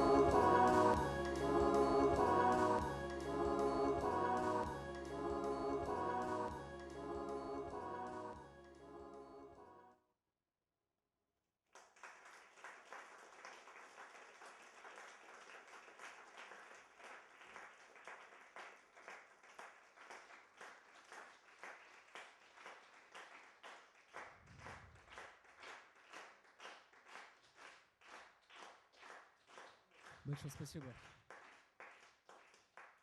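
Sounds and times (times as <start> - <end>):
music: 0.0 - 10.0
audience applauding: 11.8 - 33.0.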